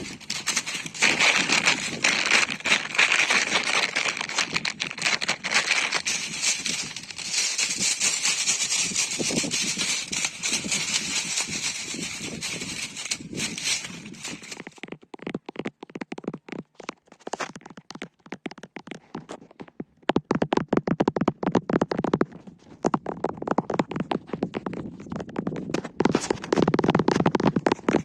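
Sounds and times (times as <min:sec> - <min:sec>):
scratchy rustle: 0:00.0 - 0:14.8.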